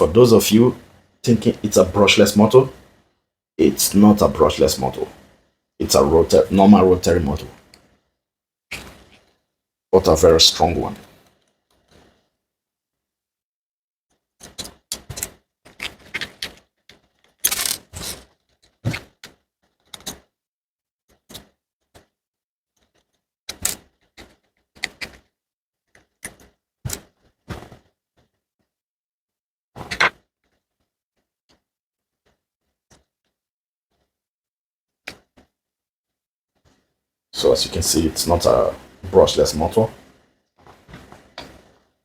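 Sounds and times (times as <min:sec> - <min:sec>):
plastic and metal parts clicking: 0:14.4 - 0:17.9.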